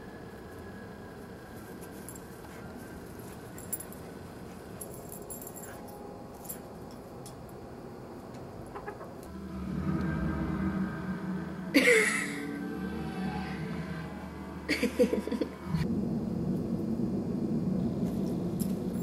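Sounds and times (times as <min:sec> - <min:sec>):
steady low hum: 0:00.0 - 0:19.0
music: 0:09.3 - 0:15.8.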